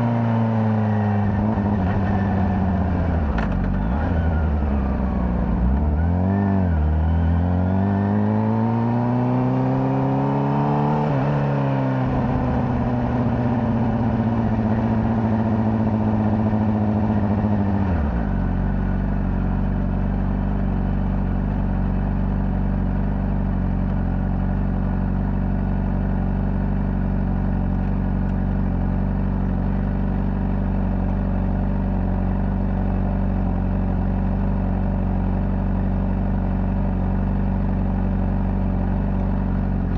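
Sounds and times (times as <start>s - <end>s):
motorcycle engine revving: 0.0s - 39.9s
motorcycle engine idling: 12.1s - 39.9s.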